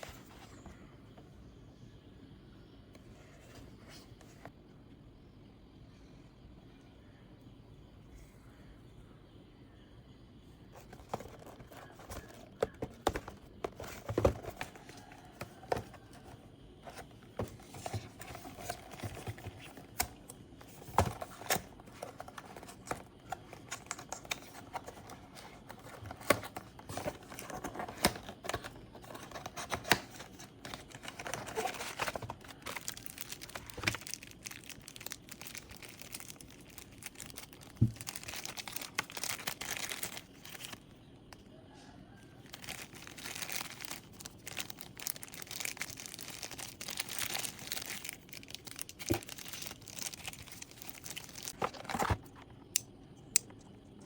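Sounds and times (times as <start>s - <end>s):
plastic and cardboard crinkling: 10.7s - 41.4s, 42.3s - 52.8s.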